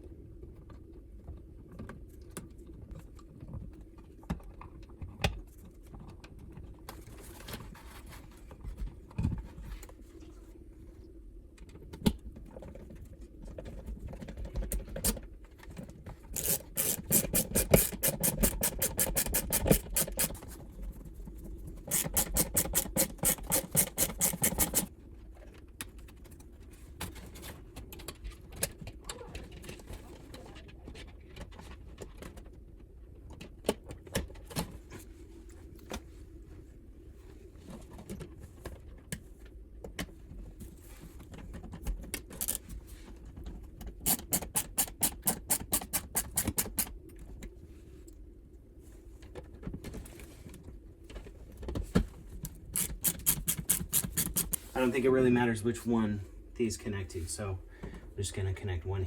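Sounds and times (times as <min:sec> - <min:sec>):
rapid evenly spaced clicking: 0:16.4 - 0:20.3, 0:21.9 - 0:24.9, 0:44.1 - 0:46.9, 0:52.8 - 0:54.6
taps and clicks of small tools: 0:21.9 - 0:24.9, 0:44.1 - 0:46.9, 0:52.8 - 0:54.6.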